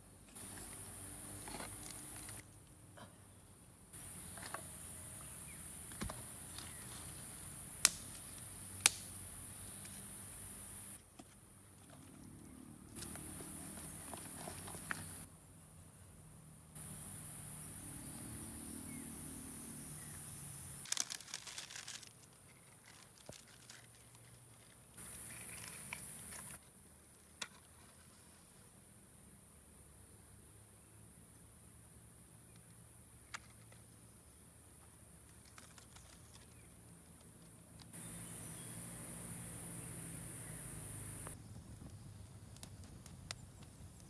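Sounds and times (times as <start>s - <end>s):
insects droning: 0.3s - 2.4s, 4.0s - 11.0s, 13.0s - 23.9s, 25.0s - 27.2s, 28.6s - 44.0s
high-pitched insect drone: 16.8s - 20.8s, 38.0s - 41.4s.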